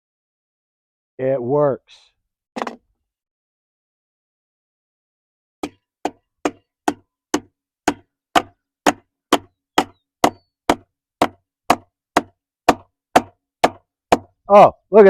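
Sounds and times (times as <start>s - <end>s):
hammering nail into wood: 5.6s - 14.3s.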